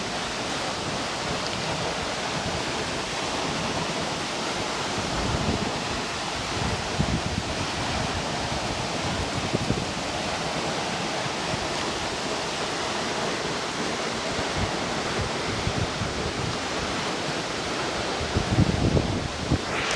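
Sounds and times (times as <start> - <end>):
waterfall roaring: 0.0 - 19.9
wind buffeting microphone: 4.9 - 10.1, 18.1 - 19.9.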